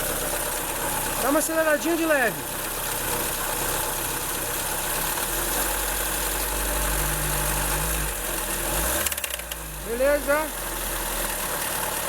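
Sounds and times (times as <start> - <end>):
car engine revving: 4.7 - 12.0.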